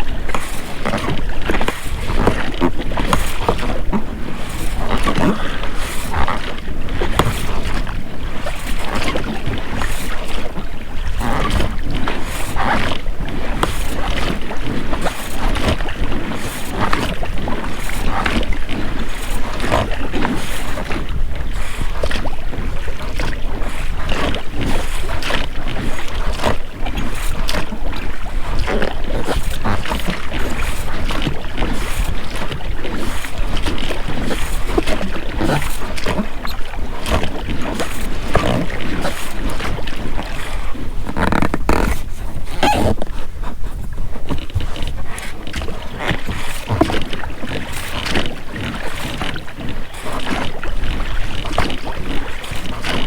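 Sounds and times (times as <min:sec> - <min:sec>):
oars splashing in water: 0:00.0 - 0:53.0
rubber rowlocks creaking: 0:00.2 - 0:21.0, 0:24.1 - 0:53.0.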